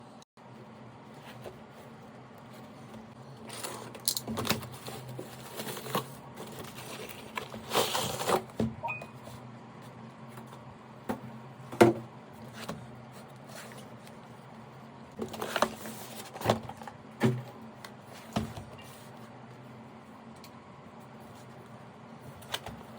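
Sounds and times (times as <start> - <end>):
packaging rustling and scraping: 1.2 - 8.6, 15.1 - 17.4.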